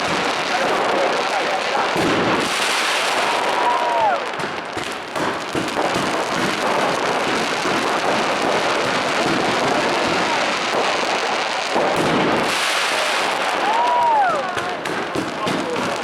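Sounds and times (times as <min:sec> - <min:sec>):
firecrackers crackling: 0:00.0 - 0:16.0.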